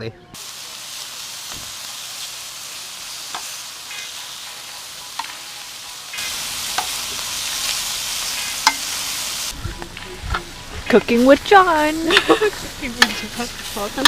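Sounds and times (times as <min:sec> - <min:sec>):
meat sizzling in a frying pan: 0:00.4 - 0:09.6, 0:10.2 - 0:14.0.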